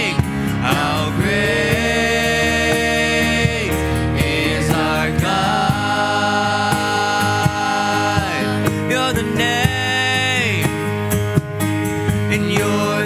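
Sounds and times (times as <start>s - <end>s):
person singing long notes: 0.0s - 10.6s
steady drum beat: 0.0s - 13.0s.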